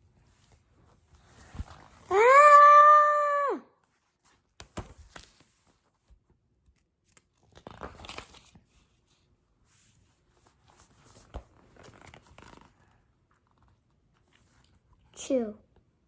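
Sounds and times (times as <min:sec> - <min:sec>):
book pages turning: 0:00.2 - 0:02.1, 0:04.1 - 0:09.2, 0:09.9 - 0:14.9
paper rustling and crinkling: 0:00.2 - 0:02.1, 0:03.9 - 0:14.9.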